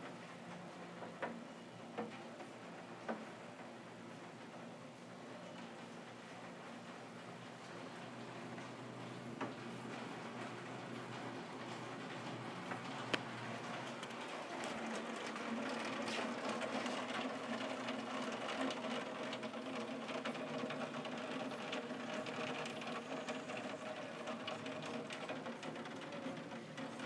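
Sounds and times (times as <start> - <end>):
heavy rain on hard surface: 9.9 - 27.0.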